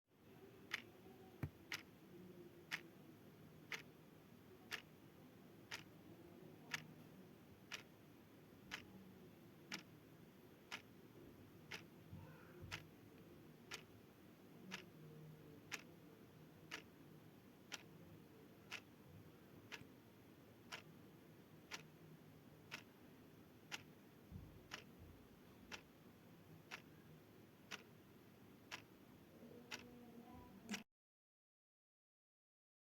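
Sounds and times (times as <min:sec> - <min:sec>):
faint low hum: 0:00.1 - 0:30.8
clock ticking: 0:00.7 - 0:02.0, 0:02.7 - 0:02.9, 0:03.7 - 0:03.9, 0:04.7 - 0:04.9, 0:05.7 - 0:05.9, 0:06.6 - 0:06.9, 0:07.7 - 0:07.9, 0:08.7 - 0:08.9, 0:09.7 - 0:09.9, 0:10.6 - 0:11.0, 0:11.6 - 0:12.9, 0:13.7 - 0:13.9, 0:14.7 - 0:14.9, 0:15.7 - 0:15.9, 0:16.7 - 0:17.0, 0:17.7 - 0:17.9, 0:18.7 - 0:18.9, 0:19.7 - 0:19.9, 0:20.6 - 0:21.0, 0:21.6 - 0:21.9, 0:22.6 - 0:22.9, 0:23.7 - 0:25.9, 0:26.7 - 0:27.0, 0:27.7 - 0:28.0, 0:28.7 - 0:29.0, 0:29.6 - 0:30.0.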